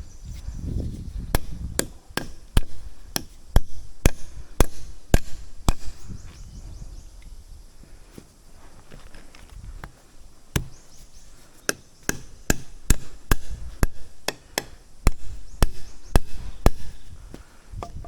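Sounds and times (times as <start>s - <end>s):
chopping wood: 1.3s - 6.2s, 9.8s - 18.0s.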